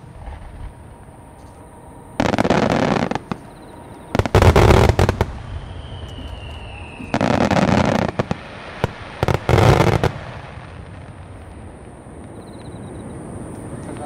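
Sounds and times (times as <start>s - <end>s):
falling whistle: 2.2s - 8.1s.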